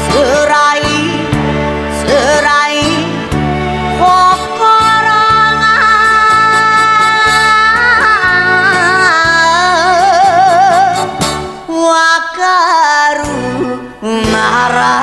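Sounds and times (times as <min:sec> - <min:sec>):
rhythmic band accompaniment: 0:00.0 - 0:11.8
woman singing with vibrato: 0:00.0 - 0:15.0.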